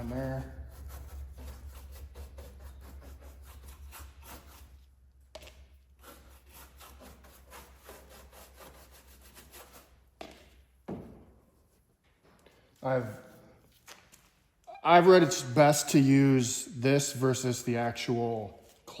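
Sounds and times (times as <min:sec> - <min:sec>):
brush scrubbing fiberglass: 0:00.0 - 0:10.5
knock: 0:10.9 - 0:11.2.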